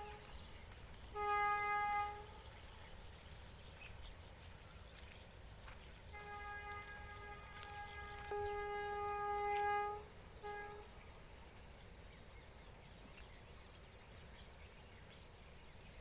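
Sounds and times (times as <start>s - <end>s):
horn blasts: 0.0s - 2.6s, 6.1s - 11.0s.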